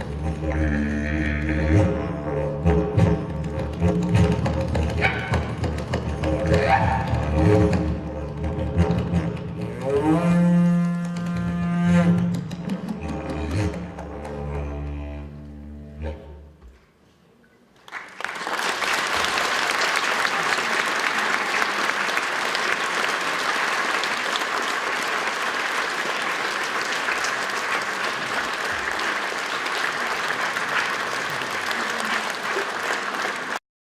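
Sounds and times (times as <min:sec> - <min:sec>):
audience applause: 0:17.8 - 0:33.6.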